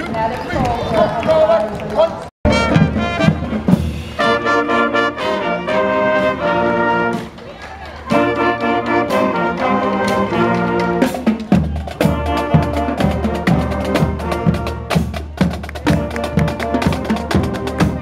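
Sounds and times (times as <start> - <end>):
brass chords: 2.4 - 7.4, 8.1 - 18.0
steady drum beat: 2.5 - 4.3, 10.1 - 18.0.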